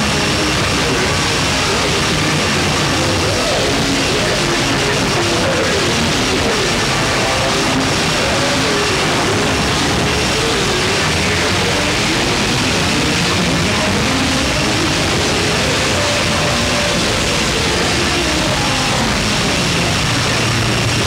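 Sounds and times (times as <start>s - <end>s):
distorted heavy metal music: 0.0s - 21.0s.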